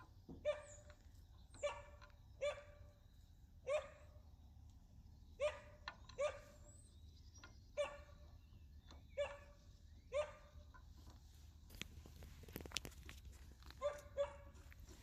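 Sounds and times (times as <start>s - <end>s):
dog barking: 0.4s - 0.8s, 1.6s - 2.8s, 3.6s - 4.2s, 5.4s - 6.6s, 7.8s - 8.1s, 9.2s - 10.6s, 13.8s - 14.6s.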